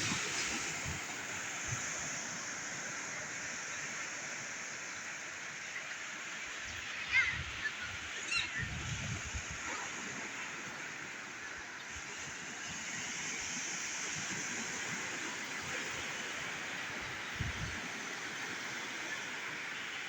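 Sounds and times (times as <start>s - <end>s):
surf breaking on a beach: 0.0s - 20.0s.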